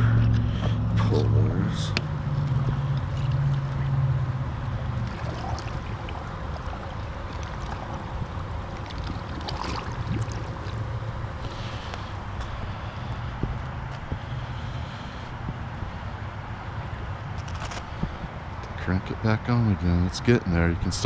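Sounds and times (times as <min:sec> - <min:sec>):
low hum: 0:00.0 - 0:21.0
pool water sloshing and gurgling: 0:02.3 - 0:12.8.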